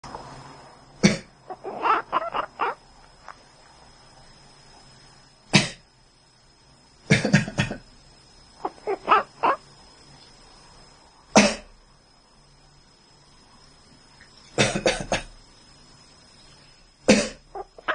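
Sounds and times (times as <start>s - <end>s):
short pitched calls: 1.3s - 3.0s, 8.6s - 9.8s, 17.3s - 17.9s
person coughing: 11.4s - 11.7s, 14.6s - 15.3s, 17.1s - 17.4s.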